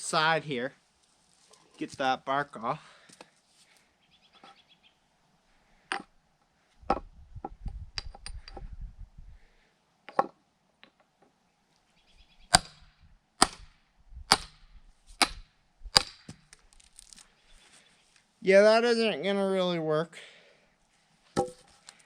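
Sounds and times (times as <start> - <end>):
tool striking log: 12.5 - 13.7, 14.3 - 14.6, 15.2 - 16.4, 21.4 - 21.7.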